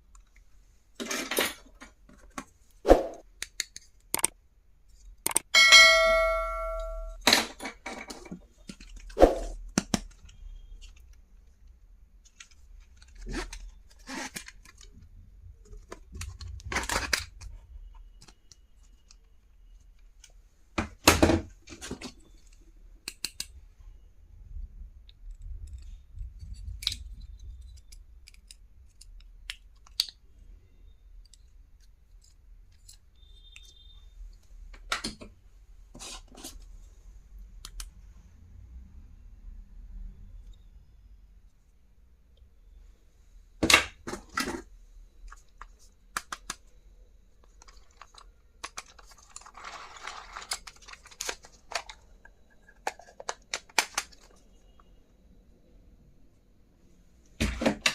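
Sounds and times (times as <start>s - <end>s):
items clicking and knocking: 1.0s - 4.3s, 5.2s - 11.2s, 12.2s - 23.6s, 43.6s - 46.8s, 47.4s - 54.9s, 57.3s - 57.9s
packaging rustling and crinkling: 12.2s - 17.6s, 47.4s - 54.5s.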